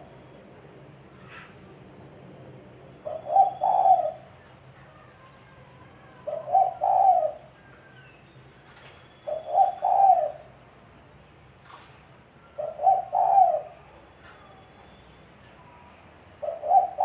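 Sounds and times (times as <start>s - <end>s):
dove cooing: 3.0s - 4.4s, 5.8s - 7.6s, 9.2s - 10.6s, 12.4s - 14.0s, 16.4s - 17.0s.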